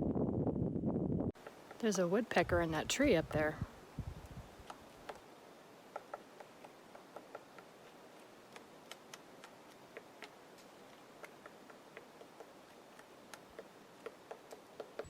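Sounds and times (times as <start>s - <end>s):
woodpecker tapping: 4.6s - 5.2s, 5.9s - 15.0s.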